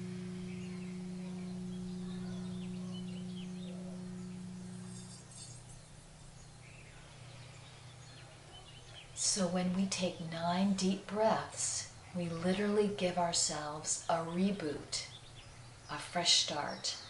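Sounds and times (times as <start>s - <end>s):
singing bowl ringing: 0.0s - 9.2s
faint bird chirps: 0.0s - 9.3s.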